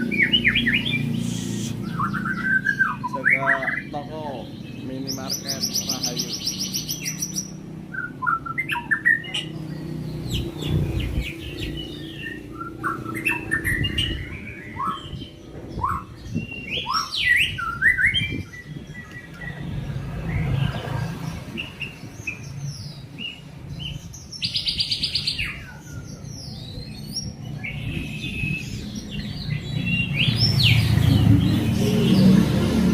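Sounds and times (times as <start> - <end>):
songbird singing: 0.0 - 32.9.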